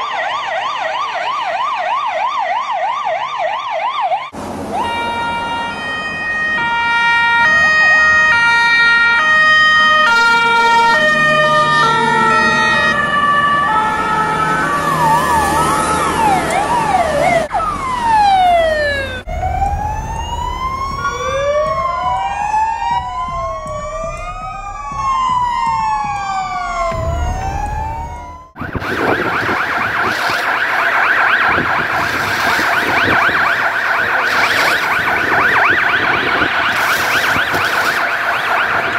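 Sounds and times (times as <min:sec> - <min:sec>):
fire truck sirens: 0:00.0 - 0:38.9
harsh pulsing siren: 0:00.0 - 0:38.9.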